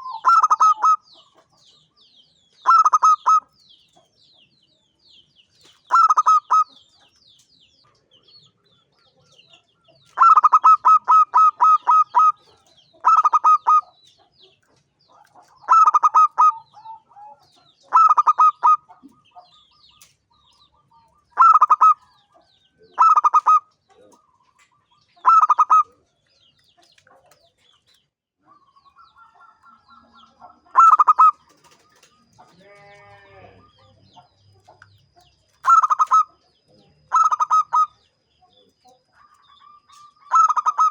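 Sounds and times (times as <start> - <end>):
dove cooing: 0.0 - 1.1, 2.6 - 3.5, 5.9 - 6.8, 10.1 - 14.0, 15.2 - 20.1, 21.4 - 22.2, 22.9 - 26.0, 29.2 - 34.8, 35.6 - 38.1, 39.1 - 40.9.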